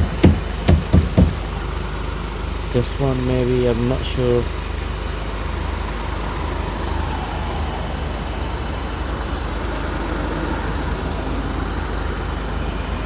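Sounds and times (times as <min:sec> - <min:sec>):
car engine rumble inside cabin: 0:00.0 - 0:13.0
wash of noise: 0:05.3 - 0:13.0.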